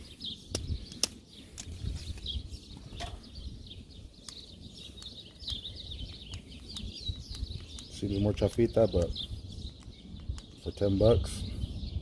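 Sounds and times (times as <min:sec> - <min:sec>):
small birds chirping: 0:00.0 - 0:12.0
handling clicks: 0:04.2 - 0:10.7.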